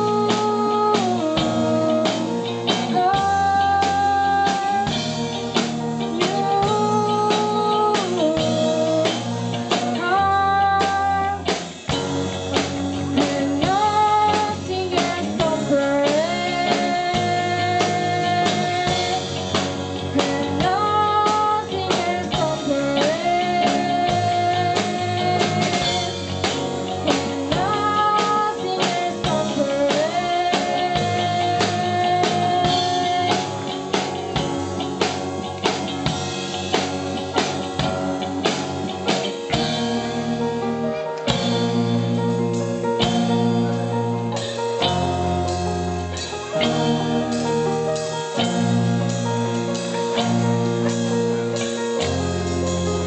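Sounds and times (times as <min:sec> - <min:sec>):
person singing long notes: 0:00.0 - 0:05.0, 0:06.1 - 0:11.5, 0:13.0 - 0:19.4, 0:20.0 - 0:26.3, 0:27.0 - 0:34.2
pop-rock band playing: 0:00.0 - 0:53.0.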